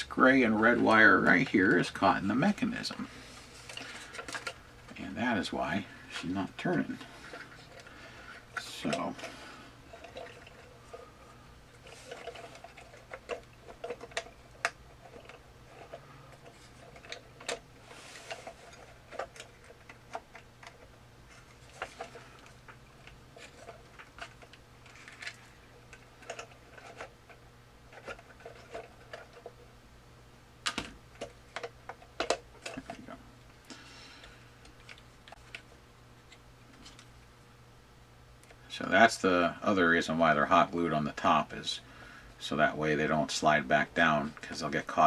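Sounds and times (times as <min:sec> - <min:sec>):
steady low hum: 0:00.0 - 0:45.0
small plastic parts clicking: 0:11.8 - 0:29.6, 0:30.6 - 0:33.0.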